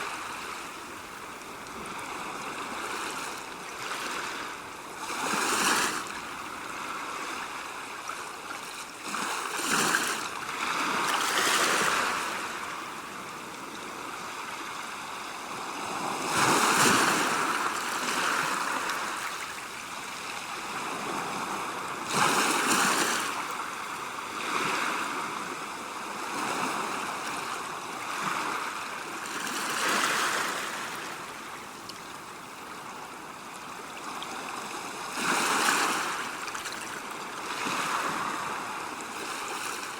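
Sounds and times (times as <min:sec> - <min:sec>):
sea waves washing in: 0:00.0 - 0:31.7.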